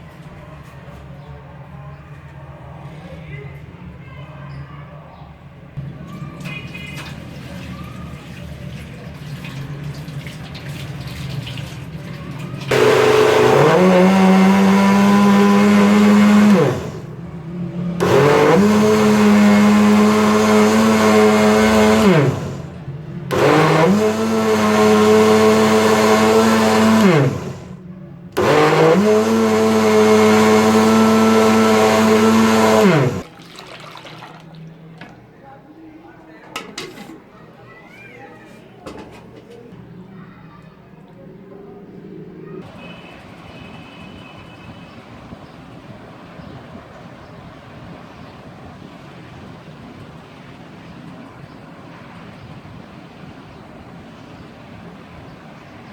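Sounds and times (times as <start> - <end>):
electric blender whining: 12.6 - 17.2, 18.0 - 27.8, 28.4 - 33.2.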